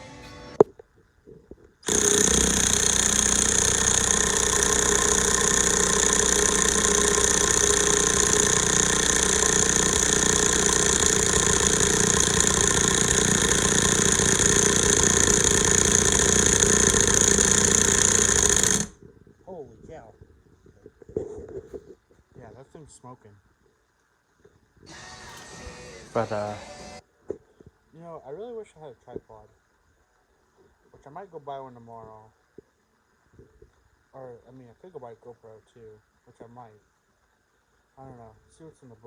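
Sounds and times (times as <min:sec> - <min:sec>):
impact wrench hammering: 0:01.8 - 0:18.9.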